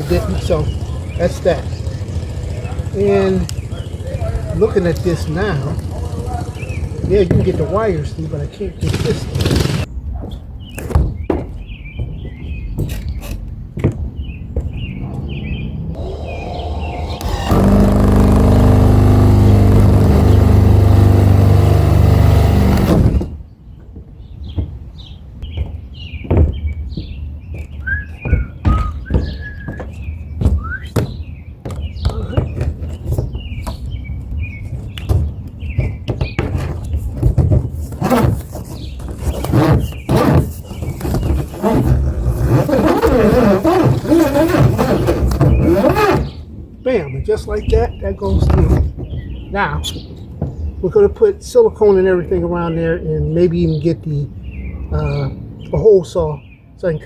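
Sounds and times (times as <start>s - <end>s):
small birds chirping: 0.0s - 57.0s
low rumble: 15.8s - 23.3s
knocks and thuds: 17.2s - 23.4s, 25.5s - 46.4s.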